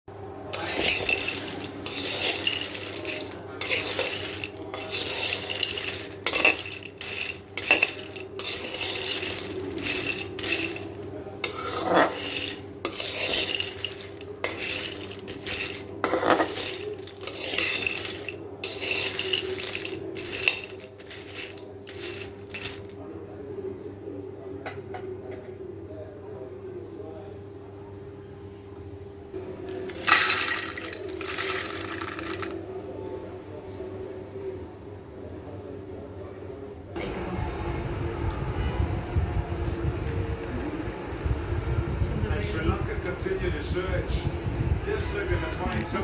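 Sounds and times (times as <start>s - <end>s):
peanuts stirred in a dry pan: 0.5s - 22.9s, 29.8s - 32.6s.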